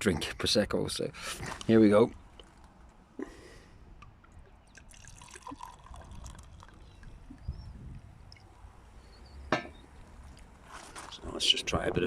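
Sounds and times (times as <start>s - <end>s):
sparkling wine pouring and fizzing: 4.7s - 7.3s.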